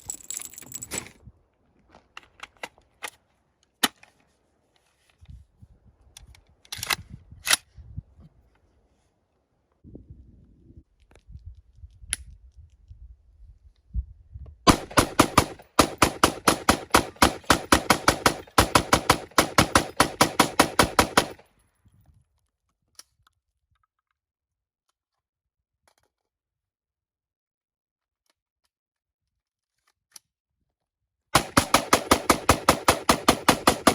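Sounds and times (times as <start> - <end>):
rapid rifle gunshots: 14.7 - 21.4, 31.4 - 33.9.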